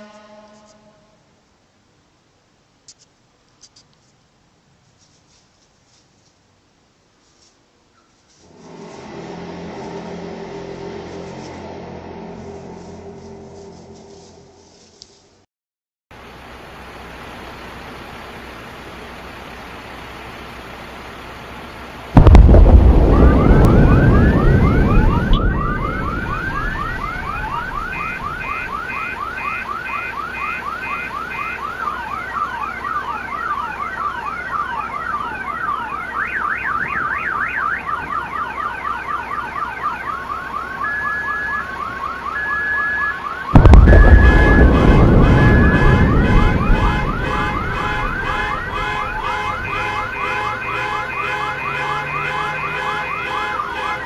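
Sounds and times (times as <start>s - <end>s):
loud boom with deep rumble: 22.2s - 28.9s, 43.5s - 50.2s
car alarms wailing and beeping: 22.2s - 54.0s.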